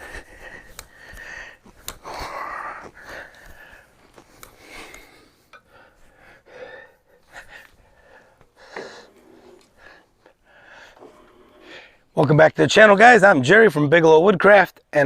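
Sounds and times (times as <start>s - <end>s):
person breathing and sniffing: 0.0s - 12.1s
small clicks: 0.6s - 2.1s, 2.8s - 5.7s.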